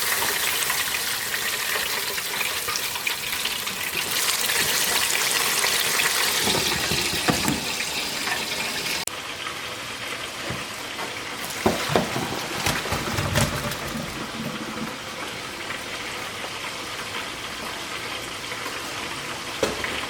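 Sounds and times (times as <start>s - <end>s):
water running from tap: 0.0s - 9.1s, 11.4s - 16.1s
sharp knocks and clunks: 6.4s - 7.8s.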